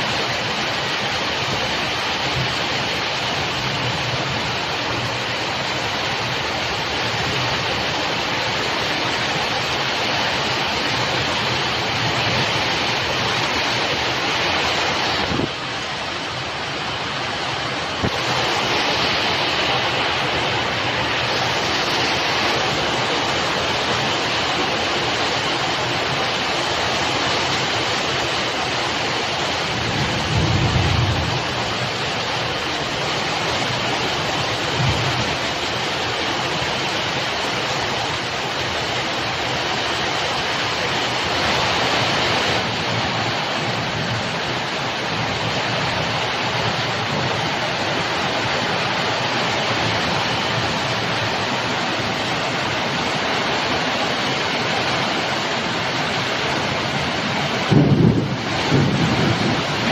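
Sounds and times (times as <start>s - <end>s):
heavy rain pouring: 0.0s - 59.9s
thunder rumbling: 29.5s - 33.8s, 34.4s - 35.8s, 55.2s - 59.9s.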